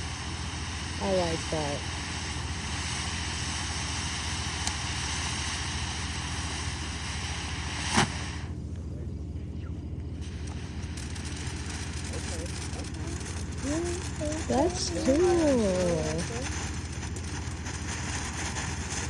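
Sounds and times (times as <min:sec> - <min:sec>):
firework hissing: 0:00.0 - 0:08.6, 0:09.4 - 0:19.0
firework bang: 0:06.7 - 0:08.5, 0:10.2 - 0:19.0.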